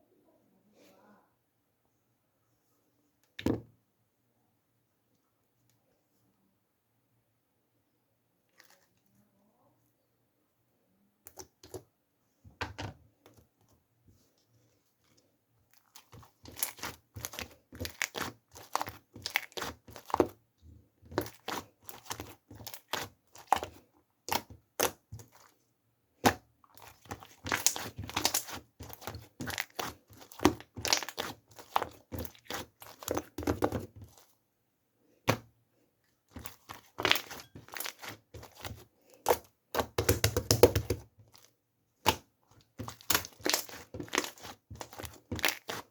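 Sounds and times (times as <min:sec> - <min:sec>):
crinkling and crackling: 0:36.3 - 0:45.9.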